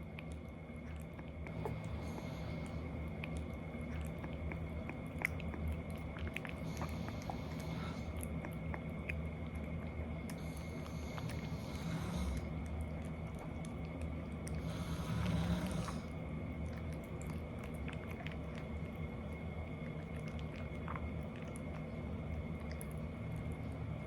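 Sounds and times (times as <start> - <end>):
woman snoring: 14.7 - 16.0.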